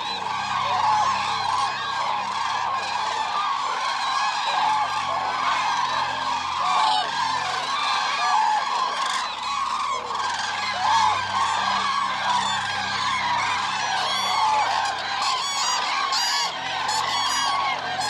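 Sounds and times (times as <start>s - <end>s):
cranes calling: 0.0s - 18.0s.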